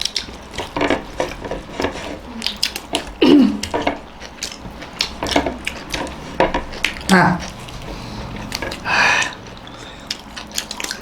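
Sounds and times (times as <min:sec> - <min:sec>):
clicks and taps of dishes: 0:00.2 - 0:06.7.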